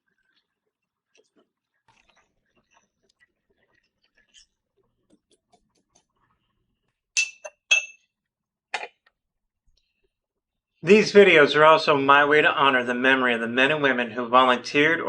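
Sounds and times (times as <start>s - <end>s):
spoon clinking against glass: 7.2s - 8.1s.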